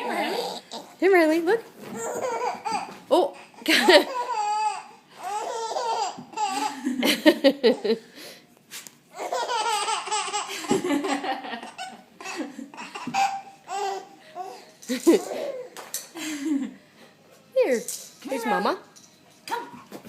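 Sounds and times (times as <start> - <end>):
baby laughing: 2.0 - 6.9, 9.1 - 15.8.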